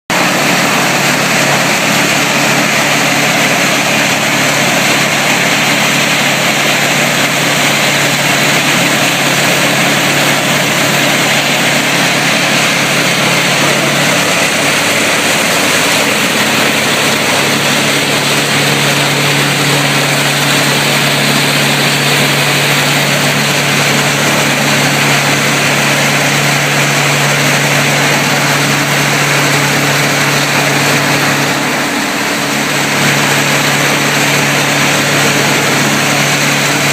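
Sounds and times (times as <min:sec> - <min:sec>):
diesel engine running steadily: 0:00.1 - 0:36.9
loud machine din: 0:00.1 - 0:36.9.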